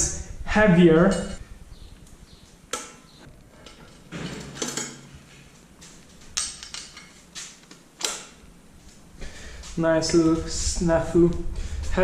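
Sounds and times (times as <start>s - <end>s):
metal bike parts clinking: 2.7s - 8.4s.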